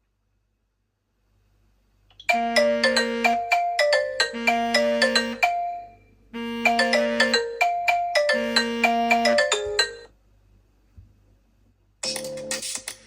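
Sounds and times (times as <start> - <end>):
bell-like ringtone melody: 2.3 - 10.1.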